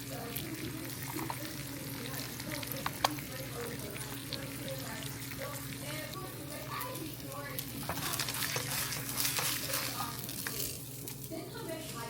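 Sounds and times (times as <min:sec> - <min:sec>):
eggs sizzling in a pan: 0:00.0 - 0:12.0.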